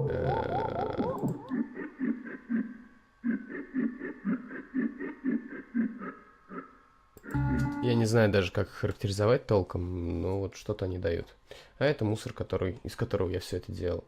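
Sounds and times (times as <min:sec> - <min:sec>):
pitched electronic pulse: 0:07.3 - 0:08.3.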